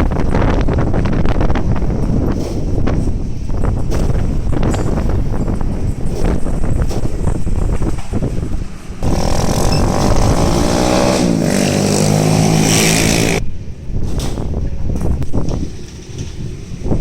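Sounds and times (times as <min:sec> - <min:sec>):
wind rumble on microphone: 0:00.0 - 0:17.0
vehicle engine passing by: 0:08.9 - 0:13.4.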